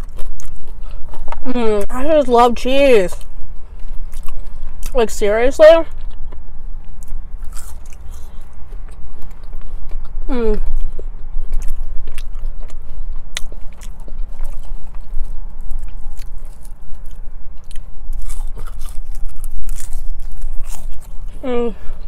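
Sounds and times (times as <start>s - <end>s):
chewing crunchy fries: 0.0s - 22.0s.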